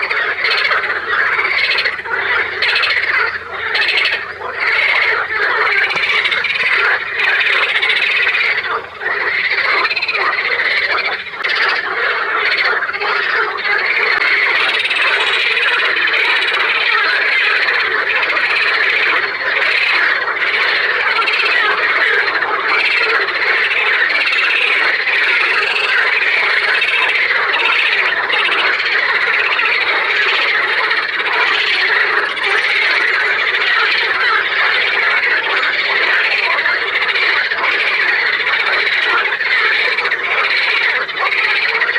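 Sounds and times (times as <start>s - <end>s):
chorus of frogs croaking: 0.0s - 41.9s.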